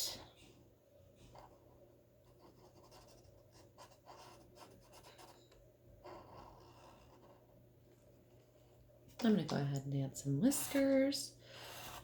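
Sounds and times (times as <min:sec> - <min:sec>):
marker stroking across paper: 0:11.6 - 0:12.0.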